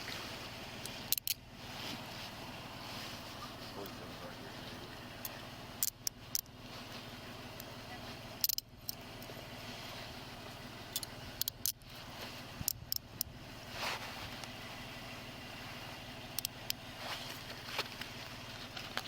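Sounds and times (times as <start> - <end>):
rustles: 0.0 - 19.0
vehicle engine idling: 0.0 - 19.0
sharp clicks: 10.9 - 11.9.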